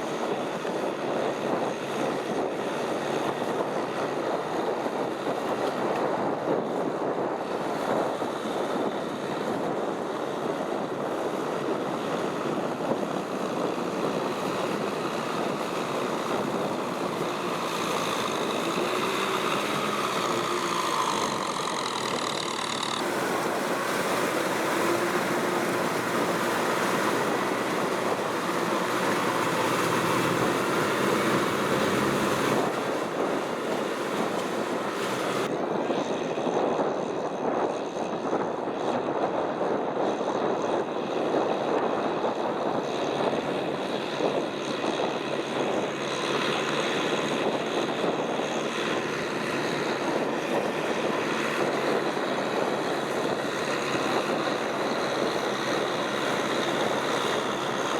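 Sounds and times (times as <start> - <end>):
tractor diesel engine droning: 11.1 - 35.5, 45.2 - 57.9.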